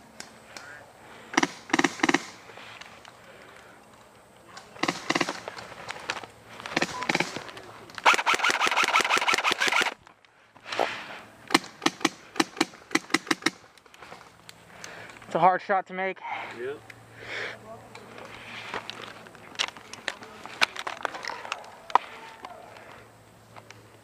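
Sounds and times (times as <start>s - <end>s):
airsoft guns firing: 1.3s - 2.4s, 4.8s - 5.6s, 6.7s - 10.0s, 11.5s - 13.7s.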